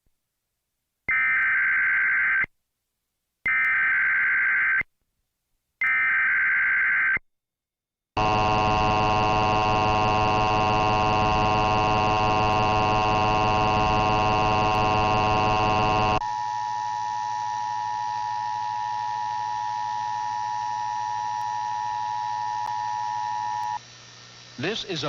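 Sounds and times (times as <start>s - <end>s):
harsh raspy electronic buzzer: 8.2s - 23.8s.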